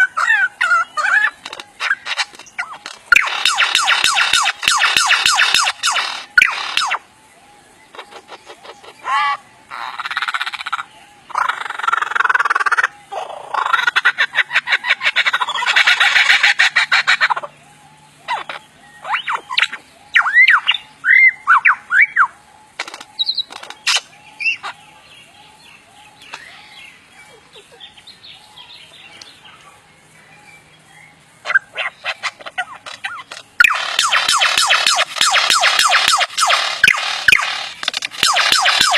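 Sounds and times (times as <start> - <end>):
bird chattering: 0.0 - 7.1, 7.9 - 29.8, 30.7 - 38.9
lyrebird clicking rattles: 1.2 - 6.9, 22.8 - 24.1, 32.2 - 38.9.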